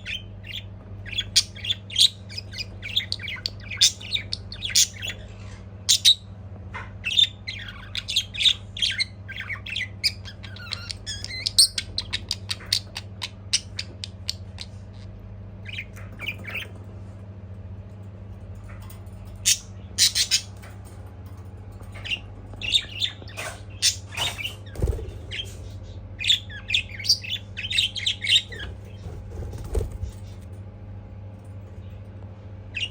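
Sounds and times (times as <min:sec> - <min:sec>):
low hum: 0:13.4 - 0:32.9
budgerigar chirping and warbling: 0:19.4 - 0:20.5, 0:26.2 - 0:29.1.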